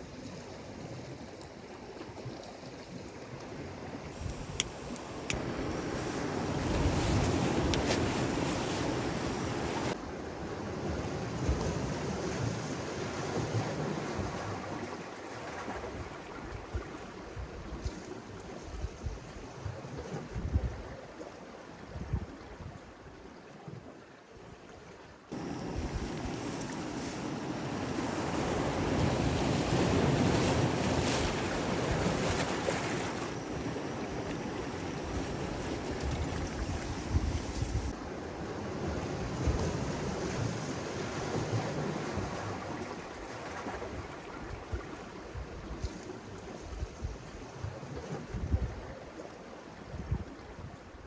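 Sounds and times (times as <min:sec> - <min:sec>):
wind buffeting microphone: 0:04.2 - 0:10.0, 0:25.4 - 0:42.9
surf washing against shore: 0:04.2 - 0:16.9, 0:25.3 - 0:45.2.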